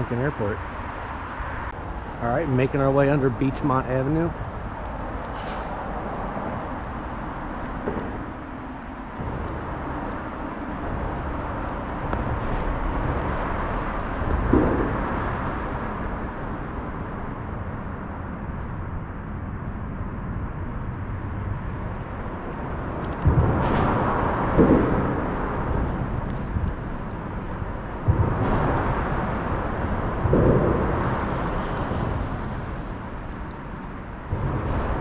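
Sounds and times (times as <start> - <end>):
road traffic passing: 0.0 - 35.0.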